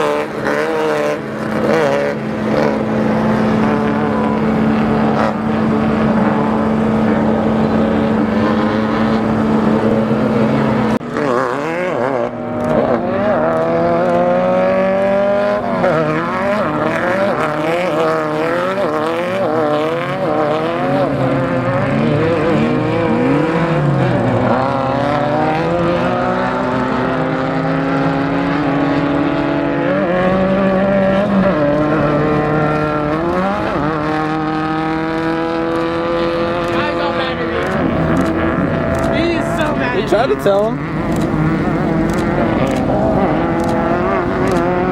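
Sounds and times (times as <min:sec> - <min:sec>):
race car engine revving: 0:00.0 - 0:44.9.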